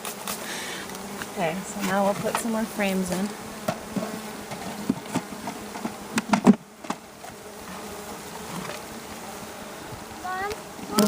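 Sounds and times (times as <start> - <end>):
honeybees buzzing: 0.0 - 11.0.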